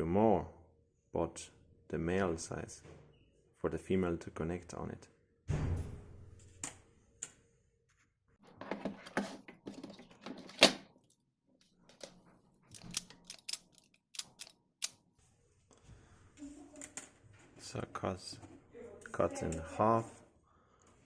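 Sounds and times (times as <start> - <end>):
wires rustling: 11.9 - 14.5.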